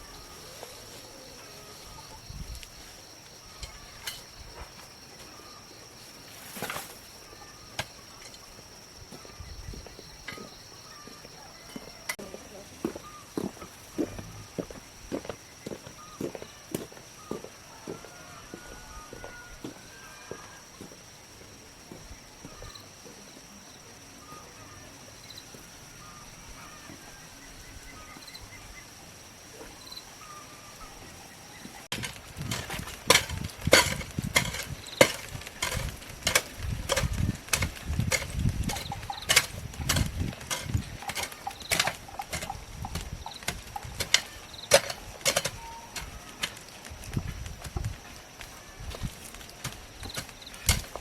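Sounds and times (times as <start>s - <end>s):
hand tool striking ground: 7.7s - 8.6s, 31.9s - 51.0s.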